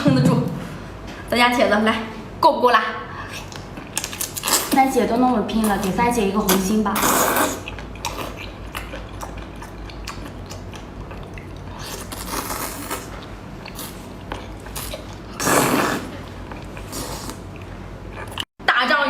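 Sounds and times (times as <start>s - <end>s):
person chewing noodles: 3.2s - 4.8s, 6.5s - 18.5s.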